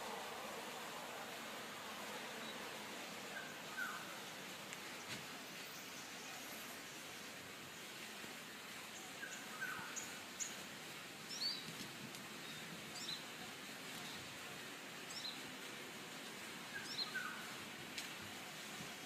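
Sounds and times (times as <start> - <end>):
faint background hiss: 0.0 - 19.0
small birds chirping: 1.4 - 11.8, 15.0 - 15.5, 16.6 - 17.6.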